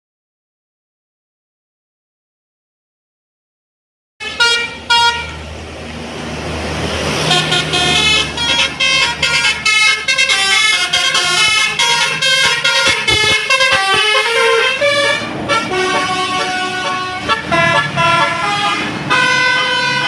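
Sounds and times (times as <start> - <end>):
bus multi-tone horn playing a tune: 4.2 - 5.5, 7.2 - 20.0
low steady engine: 4.4 - 19.8.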